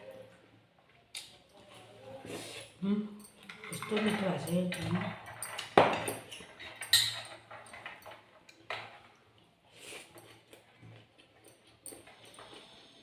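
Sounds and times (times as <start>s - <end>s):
chewing: 9.2s - 13.0s.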